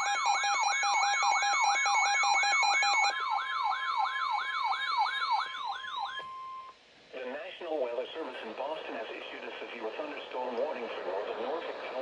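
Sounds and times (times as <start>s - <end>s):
steady warning alarm tone: 0.0s - 6.7s
electronic siren sweeping down: 1.4s - 6.6s.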